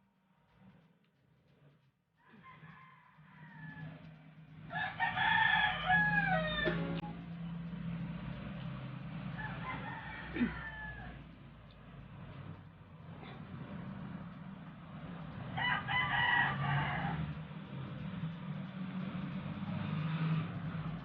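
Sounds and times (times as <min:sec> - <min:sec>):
rooster crowing: 0:02.2 - 0:07.1, 0:09.1 - 0:11.4, 0:15.5 - 0:17.4
steady low hum: 0:06.2 - 0:21.0.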